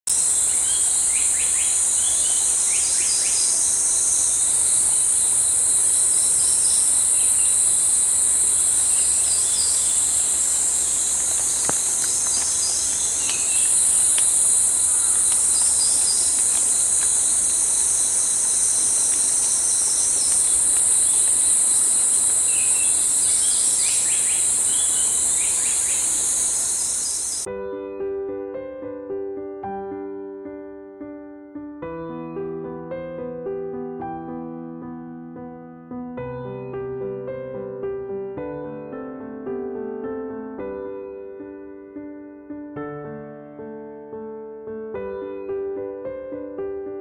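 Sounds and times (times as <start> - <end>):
high-pitched insect drone: 0.1 - 27.5.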